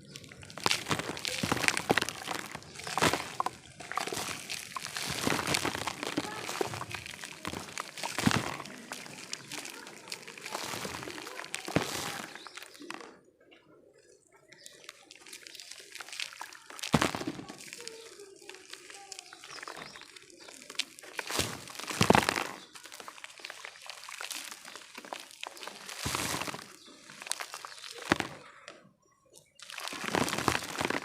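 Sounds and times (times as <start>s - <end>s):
dirt lumps snapping: 0.0s - 13.1s, 14.5s - 28.5s, 29.5s - 31.0s
dirt crumbling and crunching: 0.0s - 13.2s, 14.4s - 31.0s
grains pouring: 0.1s - 12.8s, 20.6s - 28.3s, 29.6s - 31.0s.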